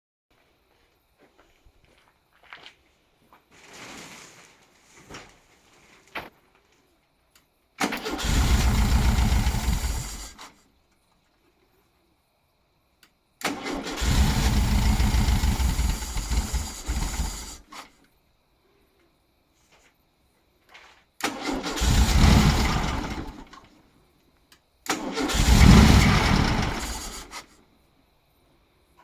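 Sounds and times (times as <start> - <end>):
car engine cranking on starter: 7.8 - 10.6, 13.4 - 18.0, 21.2 - 23.8, 24.9 - 27.5.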